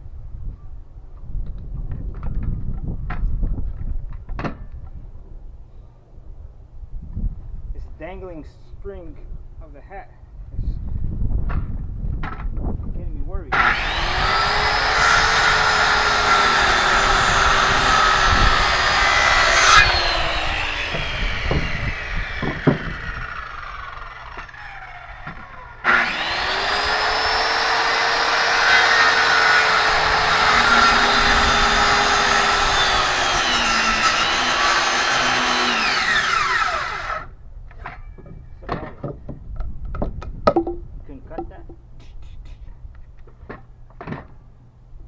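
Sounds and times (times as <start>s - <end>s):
electric power saw cutting wood: 13.5s - 37.3s.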